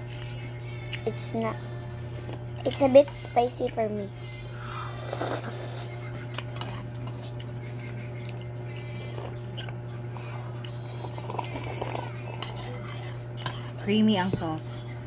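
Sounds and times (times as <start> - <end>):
steady low hum: 0.0 - 15.0
utensils clicking against bowl: 11.5 - 14.5.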